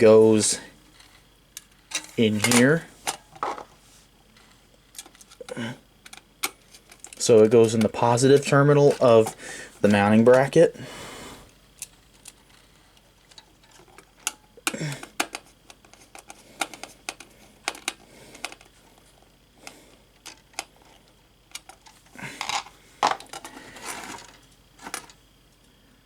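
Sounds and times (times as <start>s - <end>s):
handling noise: 1.9s - 5.4s.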